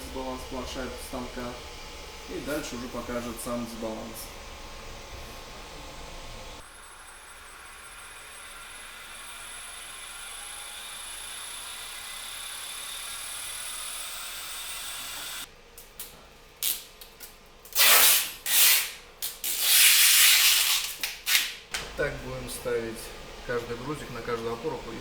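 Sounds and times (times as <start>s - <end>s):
balancing machine whirring hiss: 0.0s - 15.5s.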